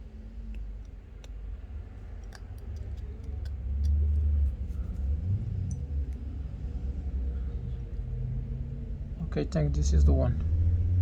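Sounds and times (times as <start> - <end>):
small tools clicking on metal: 2.0 - 4.9.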